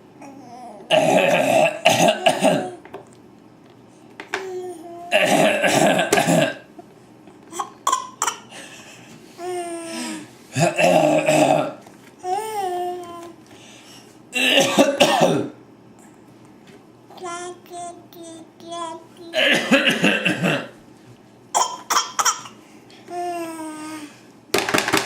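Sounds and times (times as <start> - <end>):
child coughing: 0.9 - 2.8, 5.1 - 6.7, 7.5 - 8.5, 10.6 - 11.8, 14.4 - 15.6, 19.2 - 20.8, 21.5 - 22.6.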